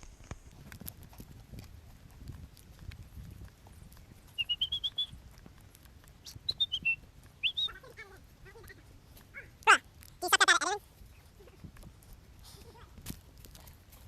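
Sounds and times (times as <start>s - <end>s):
bird singing: 4.4s - 5.2s, 6.4s - 7.9s.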